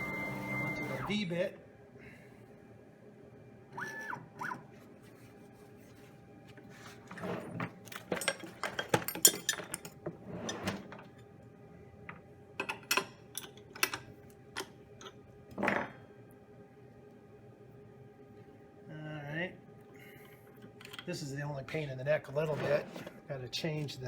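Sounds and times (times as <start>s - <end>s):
faint steady hum: 0.0s - 24.0s
metal tools clinking: 7.9s - 10.6s.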